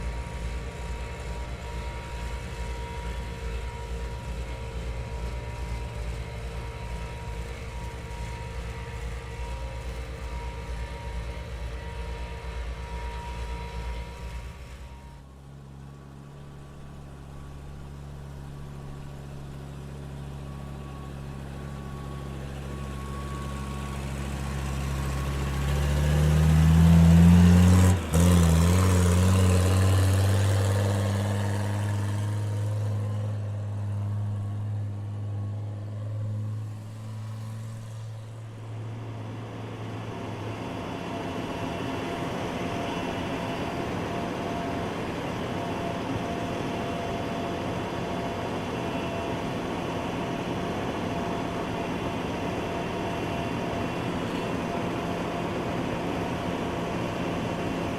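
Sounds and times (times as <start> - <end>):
construction vehicle engine revving: 20.5 - 48.6.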